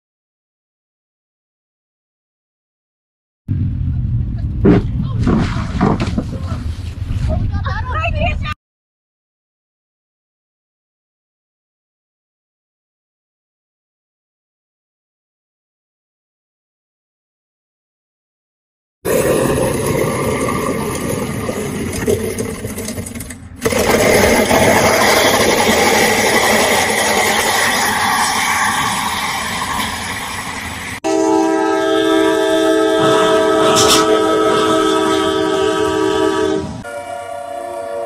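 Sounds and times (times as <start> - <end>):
loud rushing rumbling noise: 3.5 - 5.7
horn holding a chord: 31.0 - 38.0.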